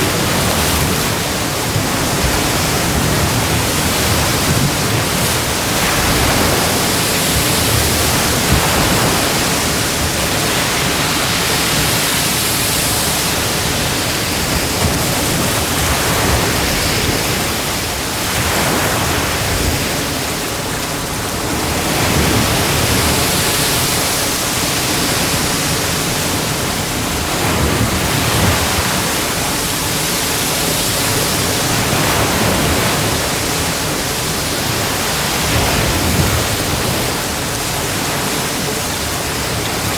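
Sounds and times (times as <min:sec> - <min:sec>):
sea waves breaking on beach: 0:00.0 - 0:39.9.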